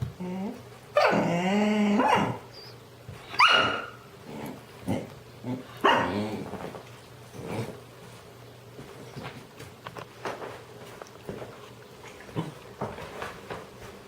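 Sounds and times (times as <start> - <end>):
dog yowling and barking: 1.0 - 4.0, 5.8 - 6.1.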